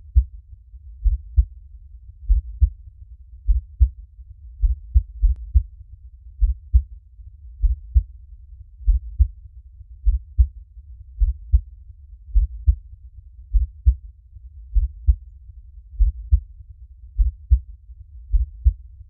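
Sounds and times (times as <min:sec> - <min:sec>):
heartbeat thumping: 0:01.0 - 0:01.5, 0:02.3 - 0:02.7, 0:03.5 - 0:03.9, 0:04.6 - 0:05.7, 0:06.4 - 0:06.9, 0:07.6 - 0:08.1, 0:08.9 - 0:09.3, 0:10.0 - 0:10.5, 0:11.2 - 0:11.7, 0:12.4 - 0:12.8, 0:13.5 - 0:14.0, 0:14.8 - 0:15.2, 0:16.0 - 0:16.4, 0:17.2 - 0:17.6, 0:18.3 - 0:18.8.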